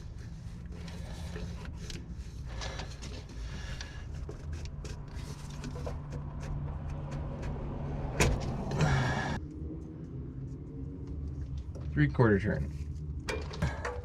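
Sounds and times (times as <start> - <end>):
tools ticking and knocking: 0.8 - 8.9
steady low rumble: 6.6 - 13.8.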